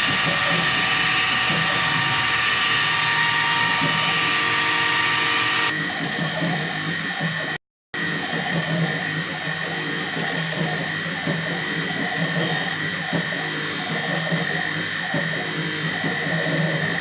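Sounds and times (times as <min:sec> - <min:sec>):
high steady tones: 0:00.0 - 0:05.7
milling machine whine: 0:00.0 - 0:17.0.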